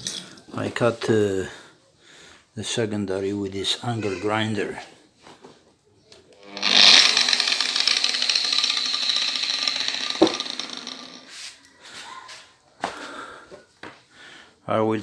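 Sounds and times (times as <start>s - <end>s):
angle grinder whine: 6.4s - 11.4s.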